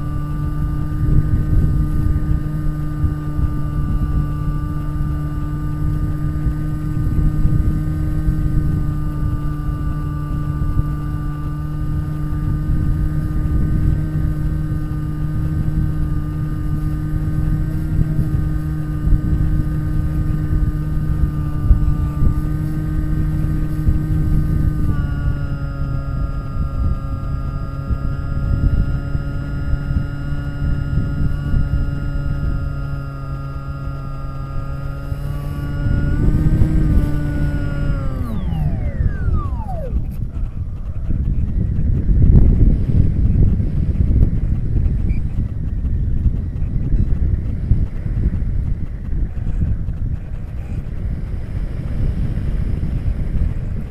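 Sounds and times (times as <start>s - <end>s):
electric motor and propeller whine: 0.0s - 53.9s
wind rushing over microphone: 0.0s - 53.9s.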